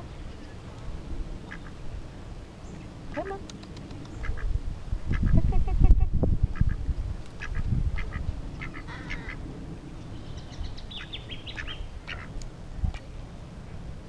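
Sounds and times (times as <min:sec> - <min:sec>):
ducks quacking: 0:01.5 - 0:01.8, 0:04.1 - 0:06.8, 0:07.4 - 0:09.4, 0:10.9 - 0:12.4.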